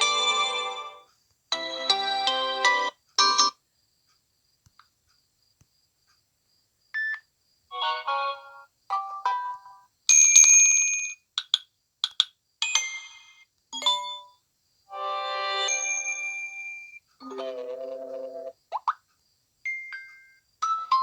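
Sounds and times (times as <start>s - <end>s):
phone notification tones: 15.2s - 18.6s.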